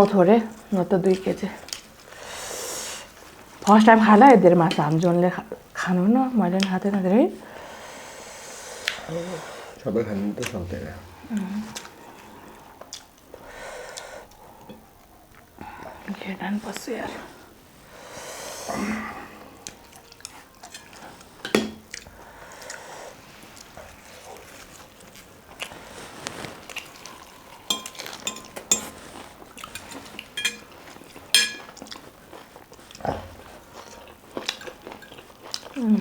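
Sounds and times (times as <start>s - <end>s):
dishes and cutlery clinking: 19.7s - 22.1s, 27.7s - 32.0s, 34.4s - 35.4s.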